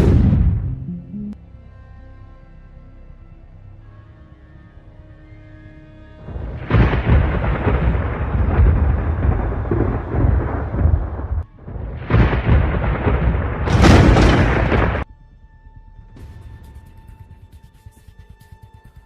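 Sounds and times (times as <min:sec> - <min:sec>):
thunder crash: 0:00.0 - 0:00.8, 0:06.3 - 0:15.1
sharp thunder crack: 0:00.0 - 0:00.9, 0:06.3 - 0:15.1.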